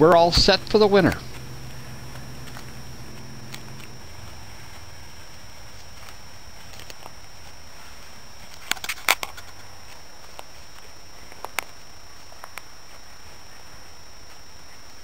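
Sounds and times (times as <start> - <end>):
footsteps snapping twigs: 0.0 - 15.0
steady low hiss: 0.0 - 15.0.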